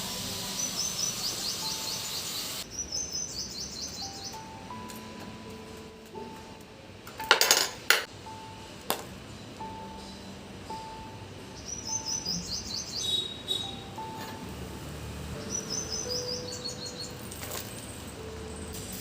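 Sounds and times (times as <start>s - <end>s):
small birds chirping: 0.2s - 5.1s, 11.4s - 14.2s, 15.4s - 18.8s.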